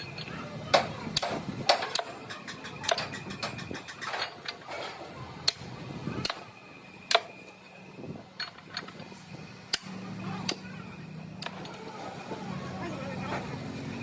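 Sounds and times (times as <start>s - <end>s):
metal tools clinking on steel: 0.0s - 5.6s, 6.2s - 10.6s.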